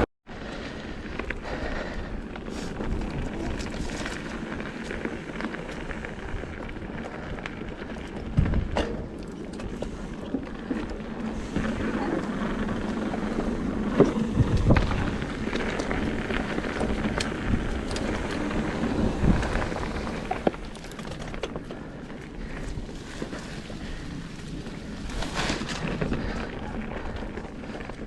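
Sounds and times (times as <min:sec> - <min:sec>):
bike tyre noise: 0:00.0 - 0:28.0
wind rumbling on microphone: 0:00.0 - 0:28.0
bike knocks and rattles: 0:08.1 - 0:28.0.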